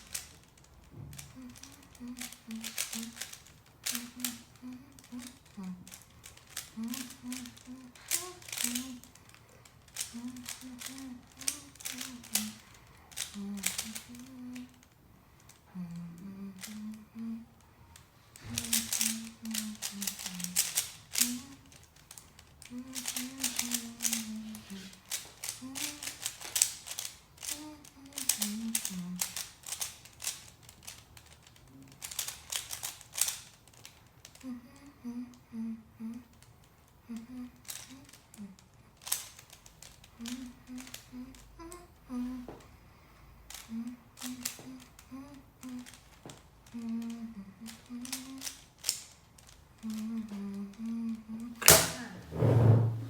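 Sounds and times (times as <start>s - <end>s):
puzzle cube clicking: 0.0s - 17.3s, 18.3s - 34.4s, 37.2s - 41.8s, 43.5s - 53.0s
person humming: 1.2s - 9.2s, 9.9s - 14.9s, 15.6s - 17.6s, 18.4s - 21.8s, 22.6s - 26.6s, 27.4s - 29.4s, 34.4s - 36.4s, 37.0s - 38.6s, 40.2s - 42.6s, 43.5s - 46.0s, 46.6s - 48.6s, 49.8s - 53.0s.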